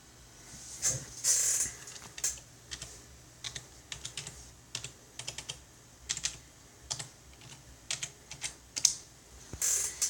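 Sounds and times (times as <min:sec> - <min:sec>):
keyboard keys clicking: 0:02.0 - 0:09.0.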